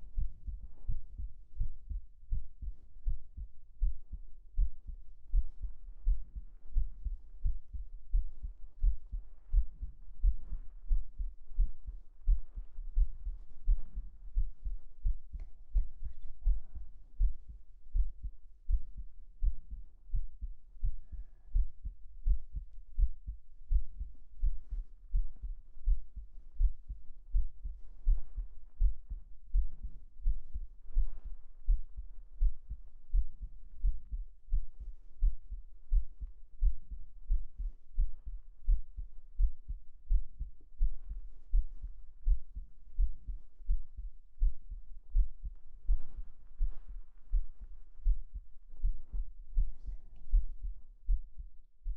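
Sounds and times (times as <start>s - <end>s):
heartbeat: 0.0s - 51.9s.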